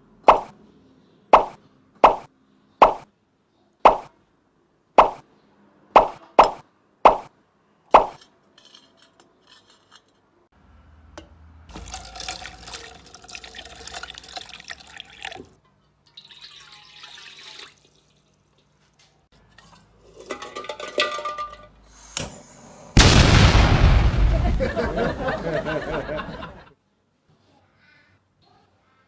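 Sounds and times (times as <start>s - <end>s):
liquid splashing and trickling: 11.7s - 18.9s.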